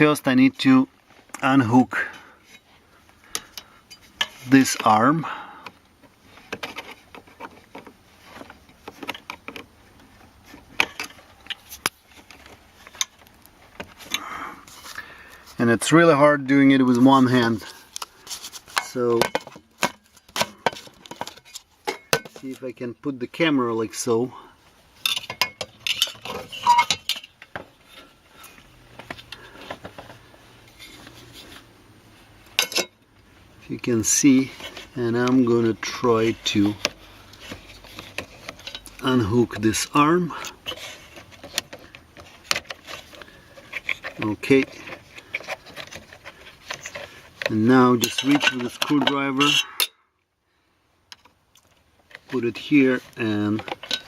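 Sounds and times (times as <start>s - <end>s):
hard plastic parts clicking: 40.4s - 49.8s, 53.0s - 54.0s
plastic and metal objects clicking: 53.0s - 54.0s.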